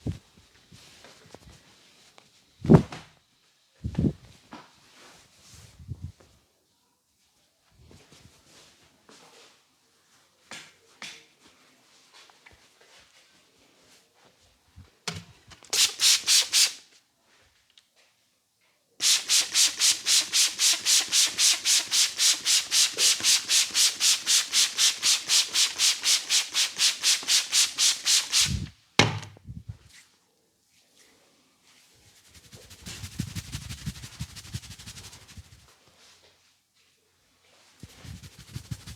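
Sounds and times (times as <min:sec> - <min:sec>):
hands rubbing scalp and hair: 0:15.8 - 0:16.8, 0:19.0 - 0:28.7, 0:32.1 - 0:35.8, 0:37.8 - 0:38.9
dull thumps: 0:29.0 - 0:29.4.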